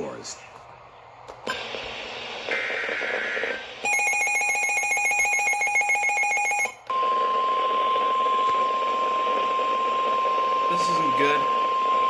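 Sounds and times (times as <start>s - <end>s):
steady alarm tone: 2.4s - 12.0s.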